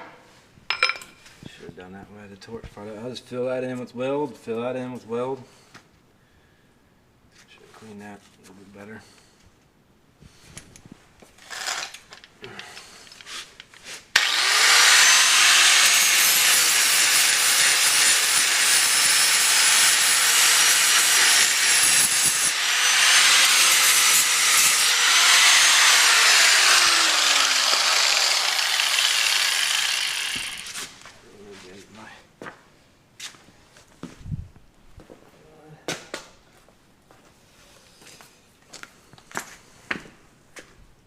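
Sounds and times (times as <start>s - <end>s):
angle grinder whining: 14.2s - 31.0s.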